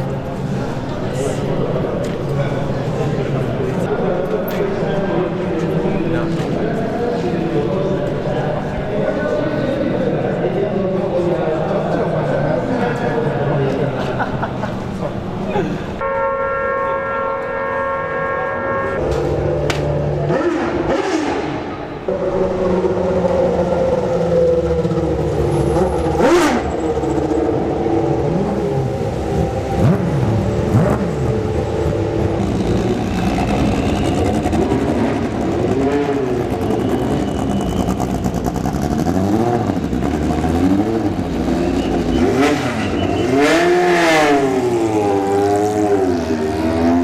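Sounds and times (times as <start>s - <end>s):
racing car engines revving: 16.9s - 47.0s.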